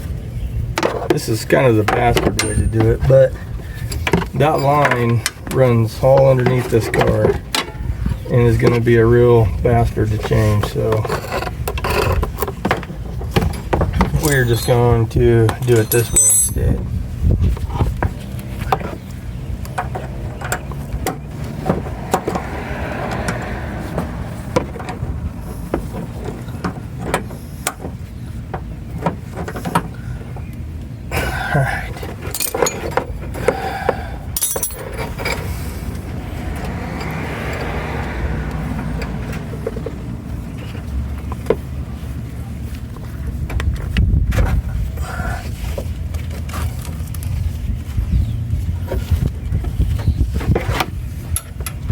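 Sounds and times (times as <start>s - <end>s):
hand tools clinking on metal: 1.1s - 3.3s, 14.0s - 16.9s, 32.2s - 33.7s, 34.4s - 35.5s
metal tool clicks and clinks: 2.4s - 2.8s, 15.5s - 16.8s, 32.3s - 33.0s, 34.4s - 35.4s
steady low rumble: 20.8s - 27.1s.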